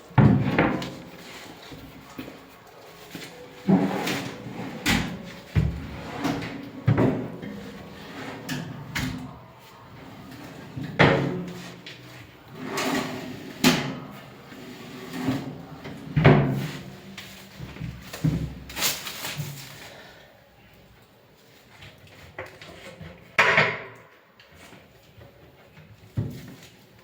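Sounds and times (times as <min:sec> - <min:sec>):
drawers sliding: 0:00.2 - 0:17.0.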